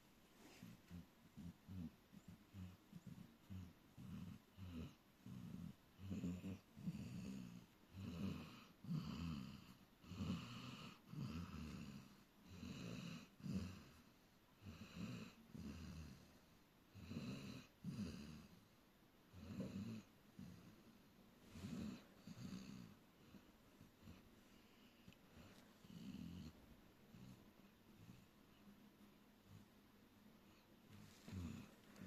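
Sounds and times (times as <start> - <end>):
dog snoring: 0.4 - 28.4, 30.4 - 32.0.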